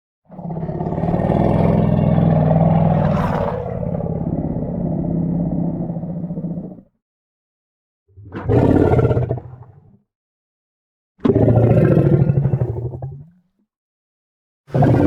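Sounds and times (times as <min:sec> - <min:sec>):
low rough monster growl: 0:00.3 - 0:06.9.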